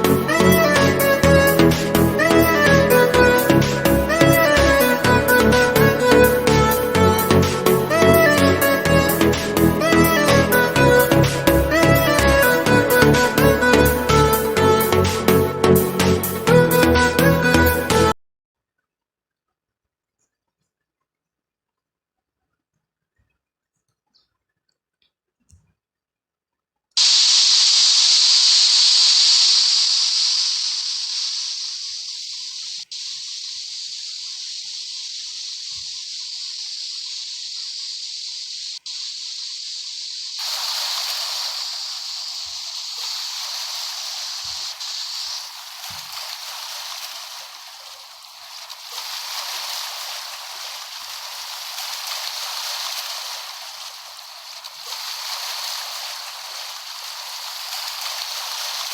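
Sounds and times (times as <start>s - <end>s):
rushing water: 0.0s - 18.1s, 27.0s - 58.9s.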